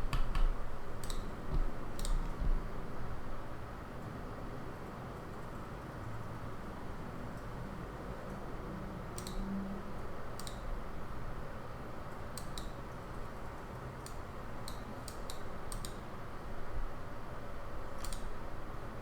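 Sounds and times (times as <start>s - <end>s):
computer mouse clicks: 0.1s - 1.3s, 2.0s - 2.4s, 9.2s - 9.4s, 10.4s - 10.6s, 12.3s - 12.8s, 14.0s - 16.0s, 18.0s - 18.3s.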